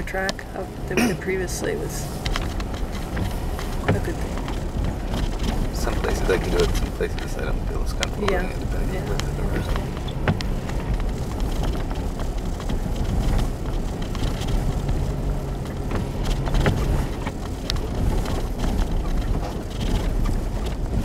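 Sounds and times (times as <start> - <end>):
engine and tyre rumble: 0.0 - 21.0
small clicks and knocks: 2.2 - 21.0.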